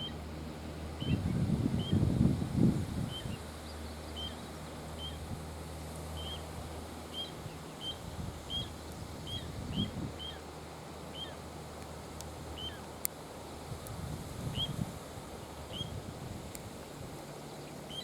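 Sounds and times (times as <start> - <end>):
low wind rumble: 0.0 - 18.0
plover alarm calls: 4.1 - 5.2, 6.2 - 11.5, 12.5 - 13.0, 17.5 - 18.0.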